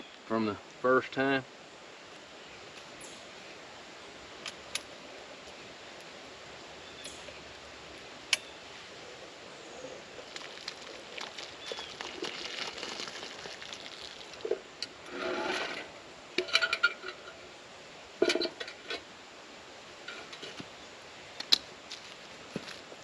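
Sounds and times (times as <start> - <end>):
metal cookware clanking: 16.4 - 17.4, 18.2 - 18.9.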